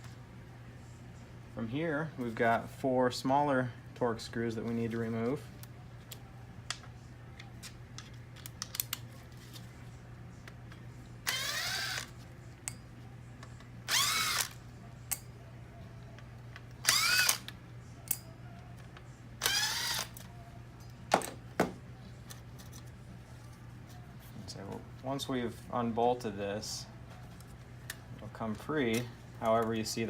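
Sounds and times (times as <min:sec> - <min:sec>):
power driver whining: 0:11.3 - 0:12.1, 0:13.9 - 0:14.6, 0:16.8 - 0:17.5, 0:19.4 - 0:20.2.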